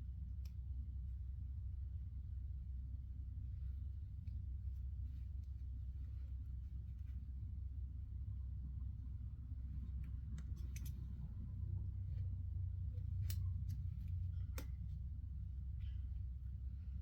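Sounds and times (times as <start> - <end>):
low hum: 0.0 - 17.0
belt buckle clicks: 10.4 - 11.0.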